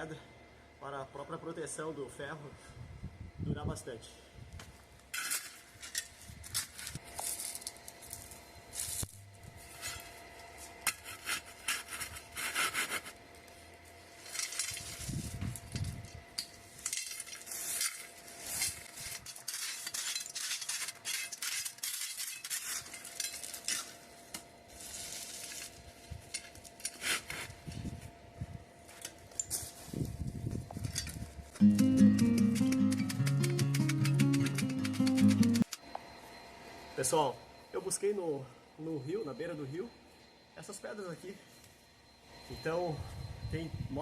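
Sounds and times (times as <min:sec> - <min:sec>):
shovel scraping in gritty soil: 0:05.1 - 0:13.2, 0:16.6 - 0:28.0.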